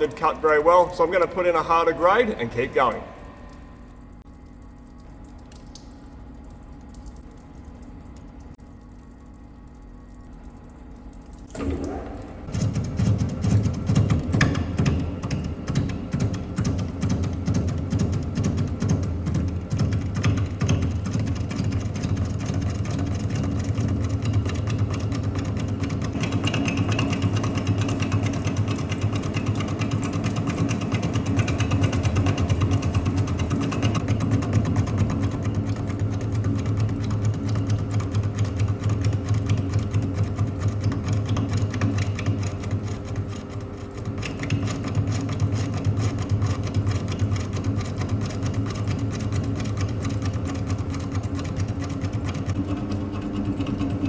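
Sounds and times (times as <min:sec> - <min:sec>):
lathe machine hum: 0:21.2 - 0:54.0.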